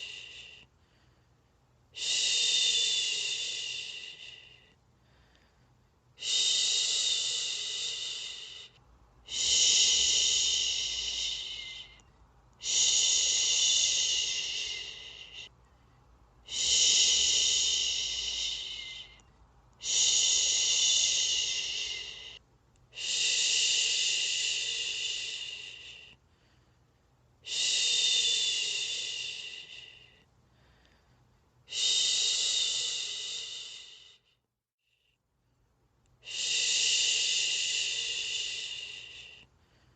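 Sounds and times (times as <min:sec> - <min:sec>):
person shushing: 0:06.2 - 0:12.0, 0:12.6 - 0:15.5, 0:16.5 - 0:19.2, 0:19.8 - 0:22.4.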